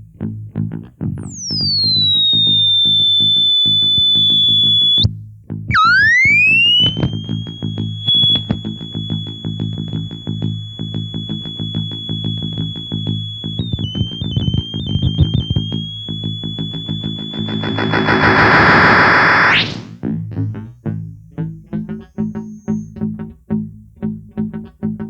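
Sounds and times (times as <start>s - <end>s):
high electronic whistling tone: 1.2s - 5.1s, 5.7s - 20.0s, 22.1s - 23.0s
stuttering low electronic buzz: 1.3s - 5.0s, 5.7s - 20.0s.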